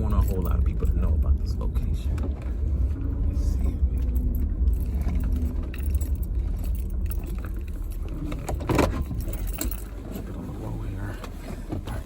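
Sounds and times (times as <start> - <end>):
car idling rumble: 0.0 - 12.0
rustling clatter: 0.0 - 12.0
metallic jingling rattle: 3.4 - 10.5.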